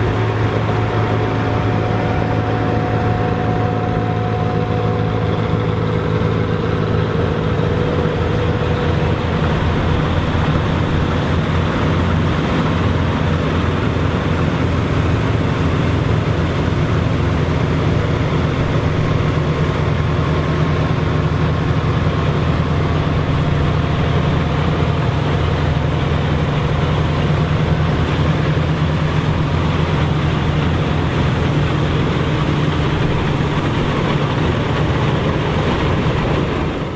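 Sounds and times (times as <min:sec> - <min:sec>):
combine harvester engine hum: 0:00.0 - 0:36.9
dense mechanical noise: 0:00.0 - 0:36.9.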